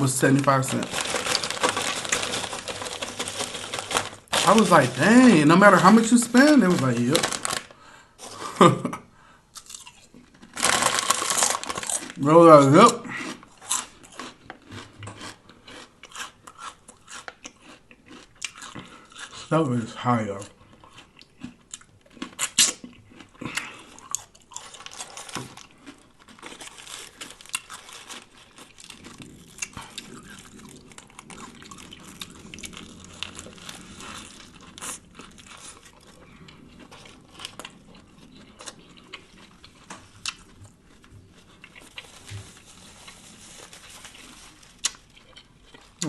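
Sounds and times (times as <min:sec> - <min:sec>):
chewing and crunching: 0:00.0 - 0:08.4, 0:09.5 - 0:46.0
sharp clicks and crinkles: 0:00.2 - 0:05.4, 0:06.3 - 0:07.7.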